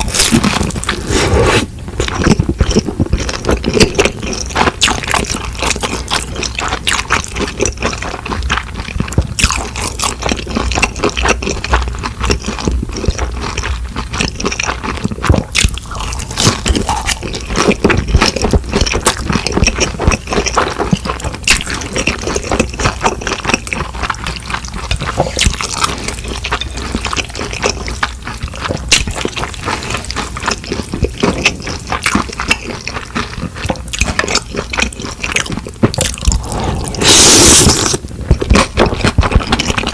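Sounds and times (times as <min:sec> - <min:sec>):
wet chewing: 0:00.0 - 0:39.9.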